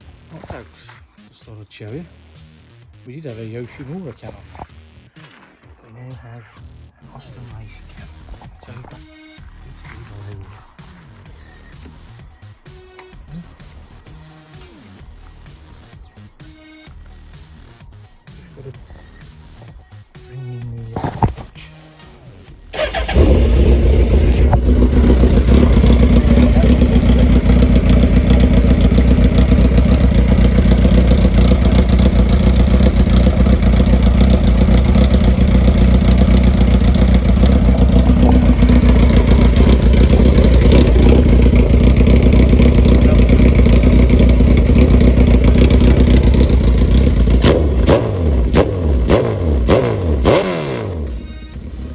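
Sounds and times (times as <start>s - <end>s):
motorcycle engine idling: 22.7s - 51.9s.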